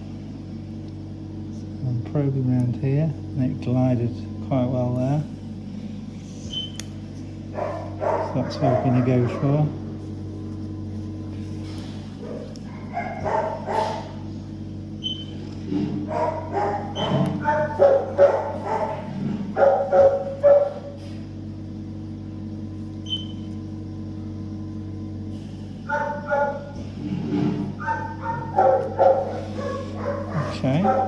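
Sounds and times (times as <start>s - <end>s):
steady hum: 0.0s - 31.0s
dog barking and yipping: 7.6s - 9.6s, 12.2s - 14.1s, 16.1s - 20.9s, 25.9s - 26.7s, 27.8s - 31.0s.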